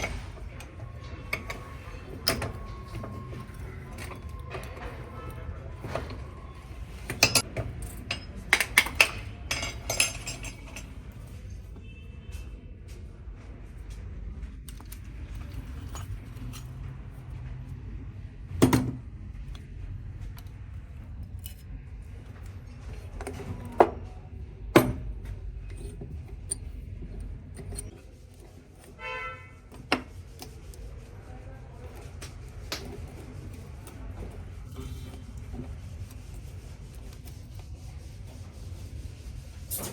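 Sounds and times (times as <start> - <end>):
metal tools clinking and knocking: 0.0 - 5.3, 7.0 - 11.7, 14.7 - 16.8, 24.7 - 28.0.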